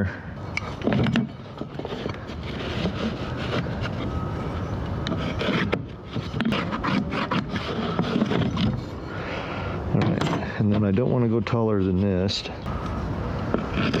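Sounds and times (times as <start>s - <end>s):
scraping and rubbing on wood: 0.7s - 9.0s, 13.5s - 14.0s.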